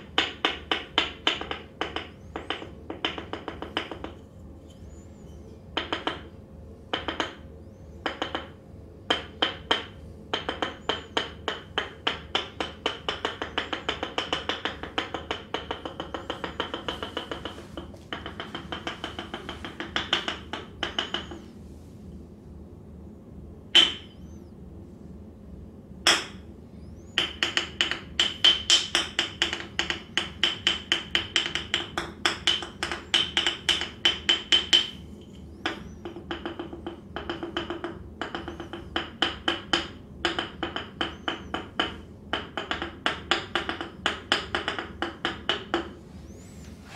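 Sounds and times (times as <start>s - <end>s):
percussive massage tapping: 0.0s - 4.2s, 5.8s - 6.3s, 6.9s - 21.5s, 23.8s - 24.2s, 27.2s - 46.0s.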